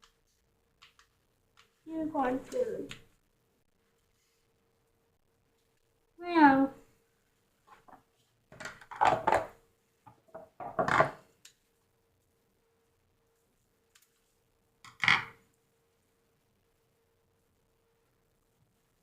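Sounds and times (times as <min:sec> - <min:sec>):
small objects clattering on a table: 0:07.7 - 0:11.3, 0:14.8 - 0:15.5.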